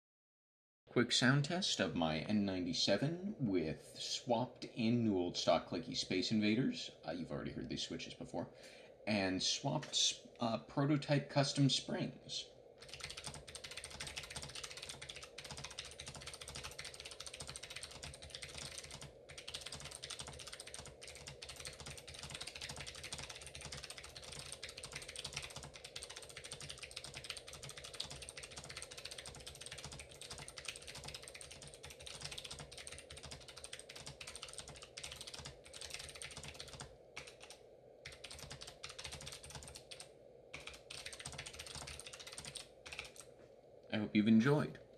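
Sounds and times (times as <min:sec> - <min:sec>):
fast typing on mechanical keyboard: 0:12.8 - 0:43.3.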